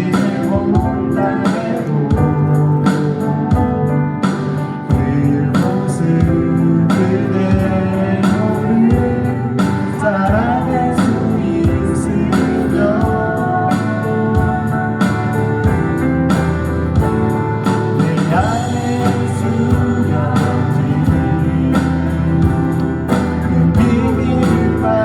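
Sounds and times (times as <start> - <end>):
live band music: 0.0 - 25.0
person singing: 0.0 - 25.0.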